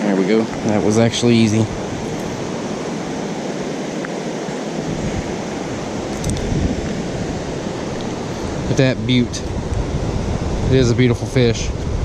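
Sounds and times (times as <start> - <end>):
stream water rushing: 0.0 - 12.0
low microphone rumble: 4.8 - 12.0.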